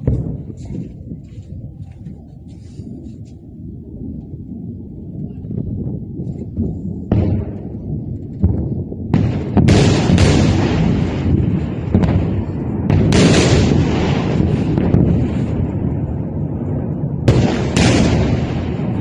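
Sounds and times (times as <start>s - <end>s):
missile explosions: 0.0s - 1.2s, 7.0s - 19.0s
continuous low rumble: 0.0s - 19.0s.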